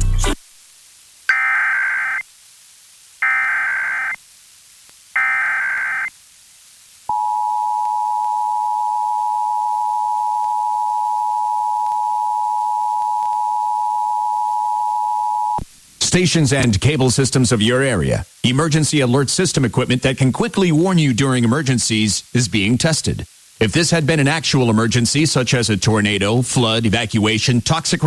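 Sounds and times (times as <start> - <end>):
digital data tone bursts: 1.3 - 2.2, 3.2 - 4.2, 5.2 - 6.1
steady two-tone alert tone: 1.3 - 2.2, 3.2 - 4.2, 5.2 - 6.1, 7.1 - 15.6.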